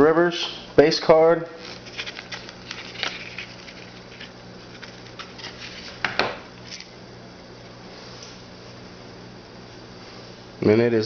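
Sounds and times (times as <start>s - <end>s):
low electrical hum: 0.0s - 11.0s
cards clicking and rustling: 1.6s - 7.0s.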